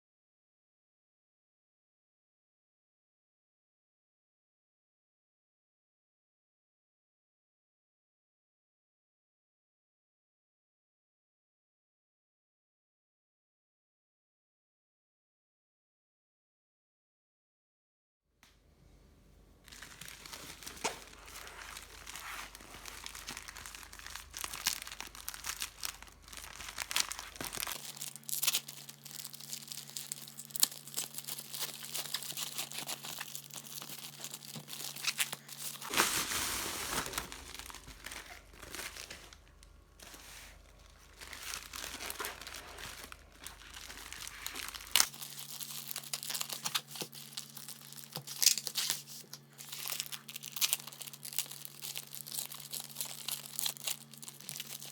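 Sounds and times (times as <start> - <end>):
plastic wrap crinkling and tearing: 19.6 - 54.9.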